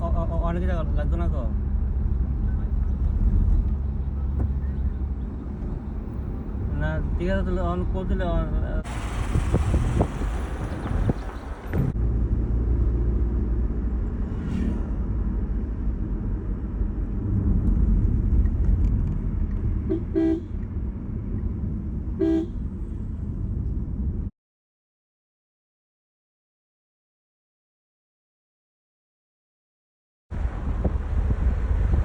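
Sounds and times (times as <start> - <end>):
car road noise rumble: 0.0 - 24.3, 30.3 - 32.0
car horn toots: 19.8 - 20.6, 22.2 - 22.6.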